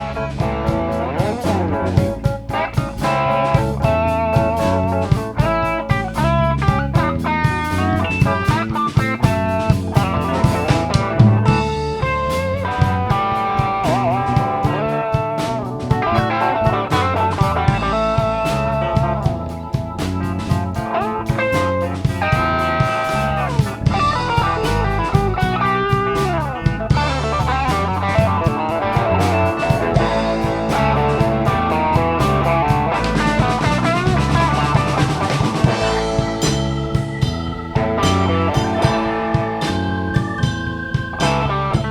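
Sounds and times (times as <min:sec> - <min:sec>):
bass guitar: 0:00.0 - 0:41.9
drums: 0:00.0 - 0:41.9
electric guitar with bent notes: 0:00.0 - 0:41.9.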